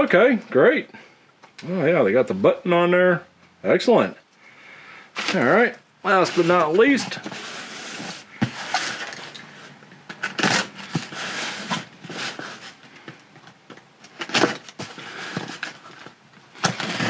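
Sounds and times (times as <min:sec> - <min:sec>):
packaging rustling and crinkling: 0:05.1 - 0:17.0.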